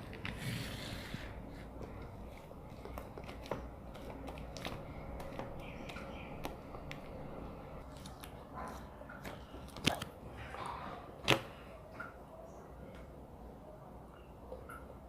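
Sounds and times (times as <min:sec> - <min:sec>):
slime handling noise: 0:00.0 - 0:11.6.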